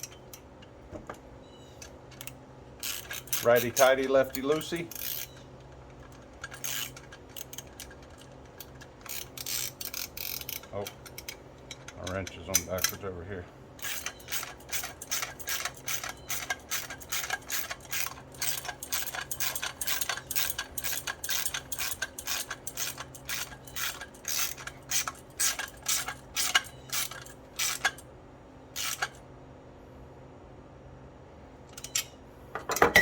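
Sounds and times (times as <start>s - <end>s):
ratchet wrench clicking: 2.2s - 5.4s, 6.0s - 13.0s, 13.8s - 28.0s, 28.8s - 29.2s.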